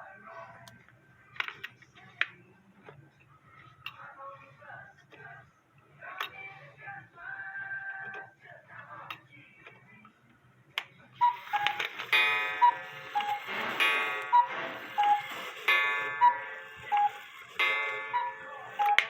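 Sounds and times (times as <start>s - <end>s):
clock ringing strikes: 11.2s - 19.0s
cuckoo clock calls: 11.2s - 19.0s.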